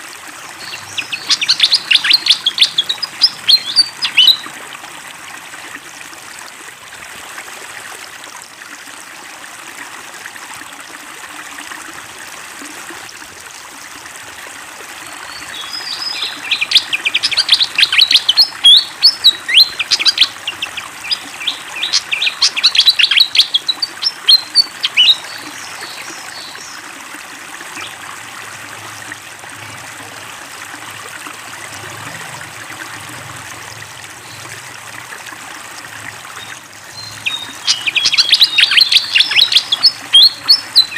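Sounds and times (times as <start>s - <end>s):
water trickling: 0.0s - 40.9s
bird chirping rapidly: 0.6s - 4.5s, 15.3s - 26.6s, 36.4s - 40.9s.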